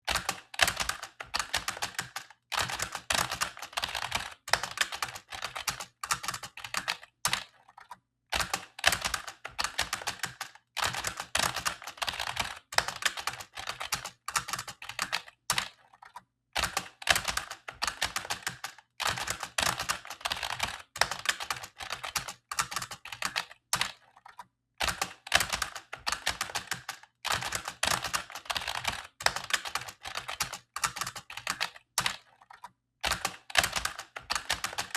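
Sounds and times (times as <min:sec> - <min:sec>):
keyboard typing clicks: 0:00.1 - 0:34.9.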